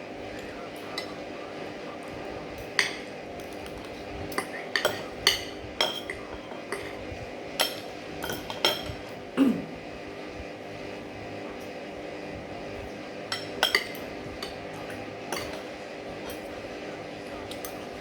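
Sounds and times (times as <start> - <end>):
cutlery clinking on a plate: 2.6 - 9.2, 13.3 - 16.6, 17.4 - 17.9.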